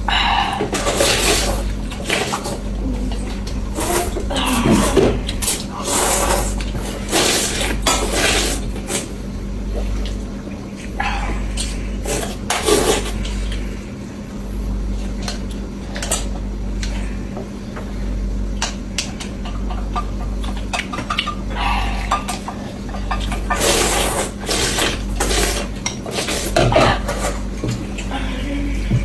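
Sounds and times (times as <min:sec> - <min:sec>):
noodles being slurped: 0:00.6 - 0:09.2, 0:09.8 - 0:13.8, 0:21.8 - 0:28.2.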